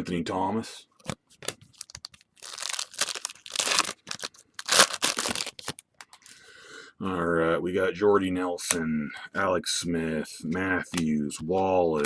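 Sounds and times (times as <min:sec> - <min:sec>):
wrapper tearing and rustling: 0:01.8 - 0:05.8.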